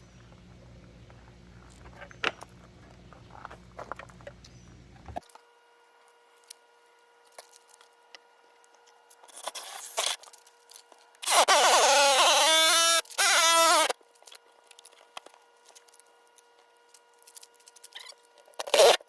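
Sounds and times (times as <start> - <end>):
power tool cutting plastic: 9.3 - 10.3, 11.2 - 14.0, 17.8 - 19.0.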